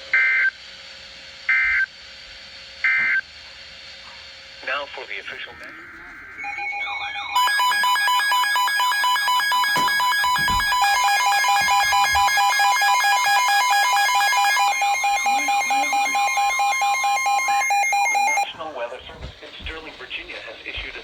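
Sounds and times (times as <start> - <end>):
rapidly pulsing beeps: 5.8 - 18.5
warbling siren-like alarm tones: 5.8 - 18.5
two-tone attention signal: 6.4 - 18.5.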